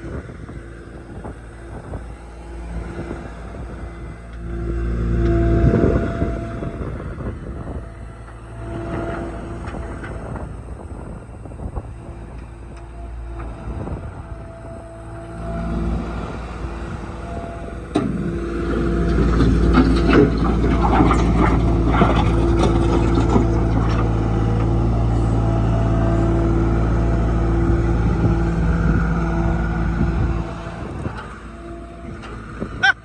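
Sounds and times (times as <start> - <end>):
diesel engine running: 0.0 - 33.0
machine clanks and rattles: 17.8 - 24.7.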